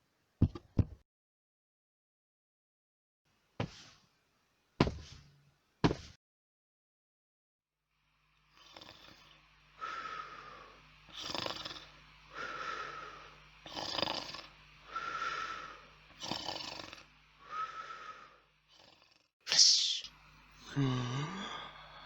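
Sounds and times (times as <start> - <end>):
person snoring: 8.6 - 22.0.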